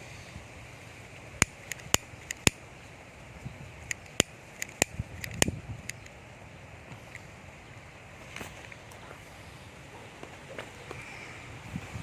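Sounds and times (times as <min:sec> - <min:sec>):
steady rain hiss: 0:00.0 - 0:12.0
sharp irregular ticks: 0:01.4 - 0:02.6, 0:03.8 - 0:06.2.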